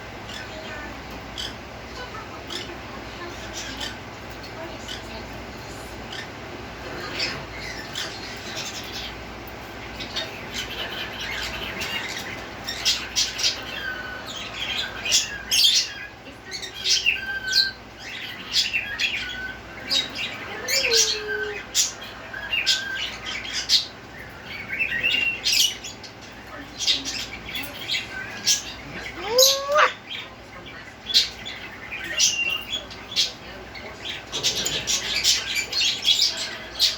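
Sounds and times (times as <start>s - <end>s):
pet bird chirping and squawking: 0.2s - 1.8s, 10.1s - 24.0s, 28.0s - 30.4s.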